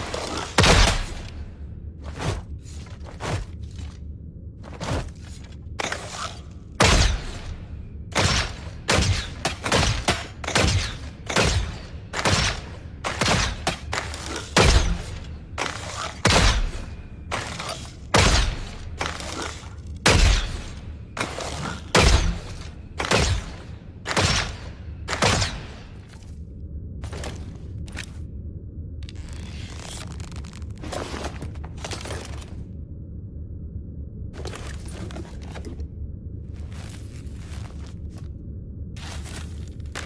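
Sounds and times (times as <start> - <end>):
arrow shots and thuds: 0.0 - 1.4, 5.8 - 26.3.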